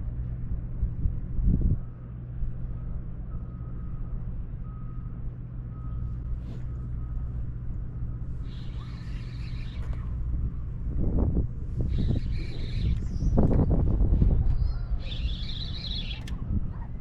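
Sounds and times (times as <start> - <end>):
low engine drone: 0.0 - 17.0
reversing alarm beeping: 1.7 - 10.2, 14.9 - 16.3.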